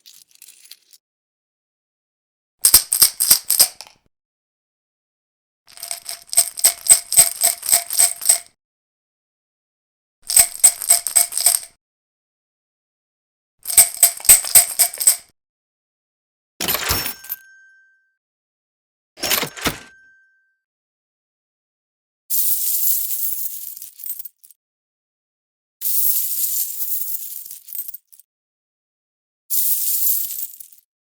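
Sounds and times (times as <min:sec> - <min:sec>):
coins clinking: 0:13.7 - 0:15.2, 0:16.6 - 0:17.9, 0:19.2 - 0:20.2.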